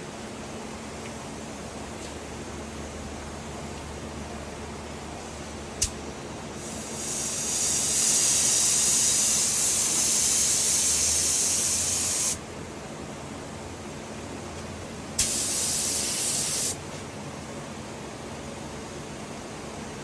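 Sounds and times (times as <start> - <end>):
paint spray gun hissing: 6.6 - 12.4, 15.2 - 16.8
spray gun click: 15.2 - 16.8.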